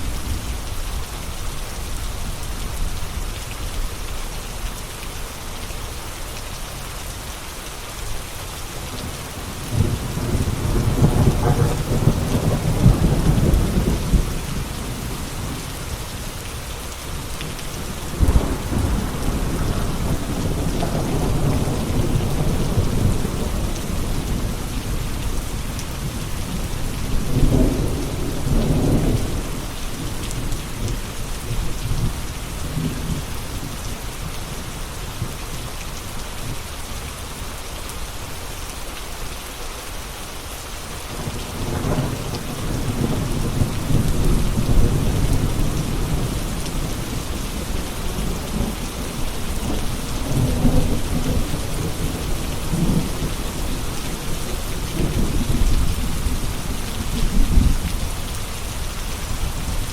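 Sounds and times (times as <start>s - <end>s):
steady rain hiss: 0.0s - 59.9s
thunder rolling: 9.7s - 14.7s, 17.8s - 25.0s.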